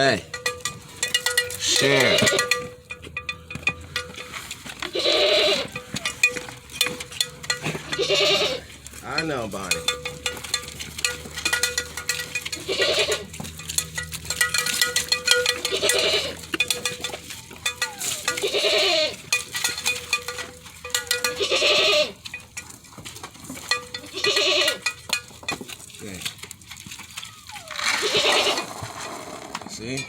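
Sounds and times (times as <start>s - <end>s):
goats bleating: 1.6s - 2.7s, 4.8s - 6.4s, 7.6s - 10.2s, 12.5s - 13.4s, 15.4s - 16.7s, 17.4s - 19.4s, 21.1s - 22.2s, 24.0s - 25.0s, 27.3s - 29.3s.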